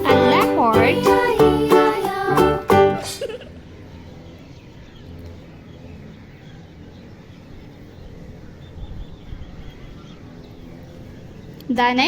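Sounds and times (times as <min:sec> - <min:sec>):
faint bird chirps: 0:03.6 - 0:12.0.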